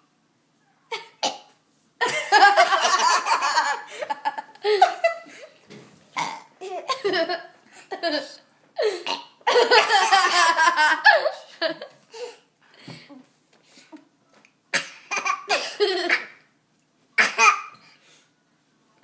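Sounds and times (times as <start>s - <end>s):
laughter: 2.0s - 5.4s
baby burping: 6.2s - 7.0s.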